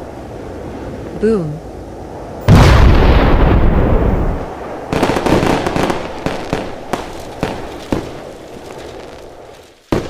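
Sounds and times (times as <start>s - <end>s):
explosion rumble: 2.4s - 8.3s
sharp bangs and crackles: 2.4s - 10.0s.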